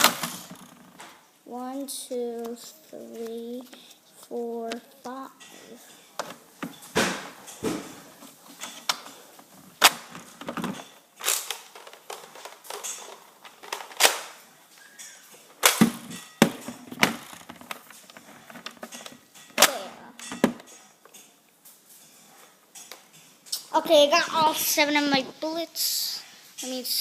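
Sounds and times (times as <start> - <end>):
toy blaster firing foam darts: 0.0 - 0.6.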